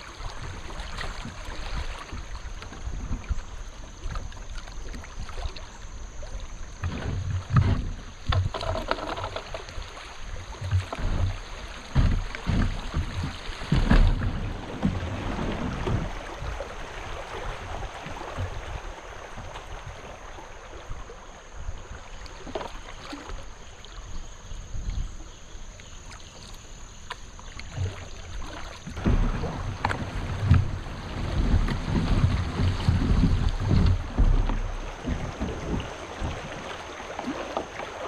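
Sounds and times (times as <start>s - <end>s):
water around kayak hull: 0.0s - 38.0s
wind buffeting microphone: 10.8s - 20.1s, 28.9s - 37.4s.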